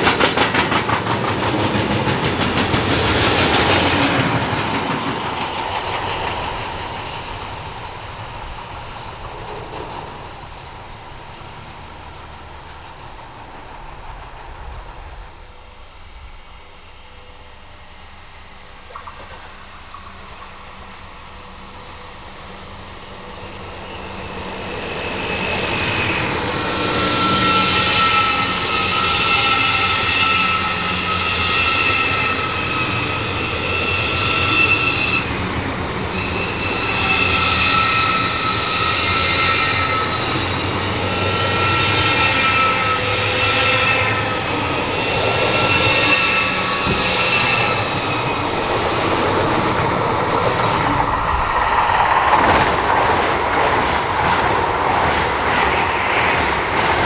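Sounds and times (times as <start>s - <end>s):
train passing at speed: 0.0s - 57.0s
wheels squealing: 18.9s - 57.0s.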